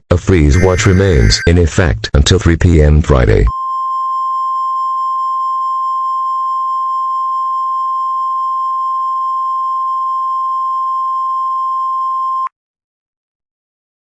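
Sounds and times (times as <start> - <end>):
high steady alarm beep: 0.6 - 1.5, 3.5 - 12.5.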